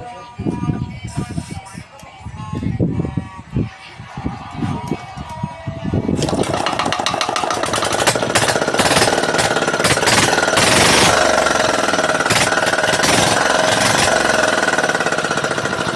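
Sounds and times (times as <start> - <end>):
engine running and revving: 6.2 - 15.9.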